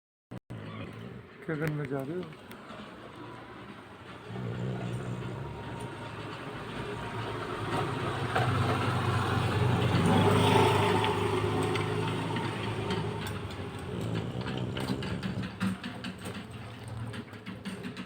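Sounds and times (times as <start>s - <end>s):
rasping snoring: 4.2s - 18.0s.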